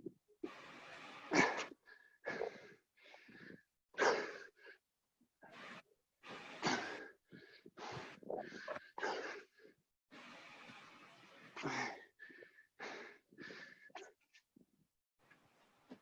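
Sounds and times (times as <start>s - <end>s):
person breathing heavily: 1.3s - 4.8s, 6.6s - 9.8s, 11.6s - 13.9s.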